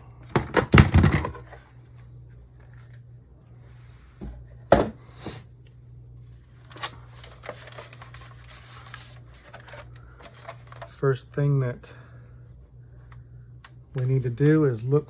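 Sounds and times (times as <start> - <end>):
steady low hum: 0.0 - 15.0
plastic case knocks and clicks: 0.3 - 1.4.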